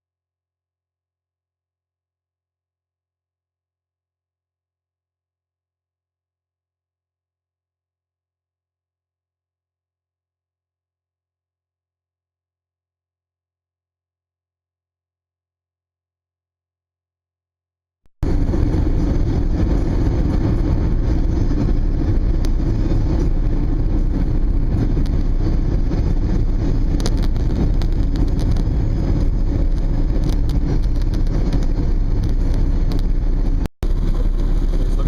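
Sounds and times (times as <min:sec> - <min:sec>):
car interior road and wind noise: 0:18.2 - 0:35.0.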